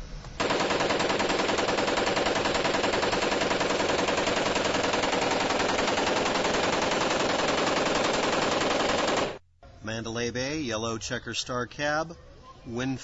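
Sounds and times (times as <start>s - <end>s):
machine gun automatic fire: 0.4s - 9.4s.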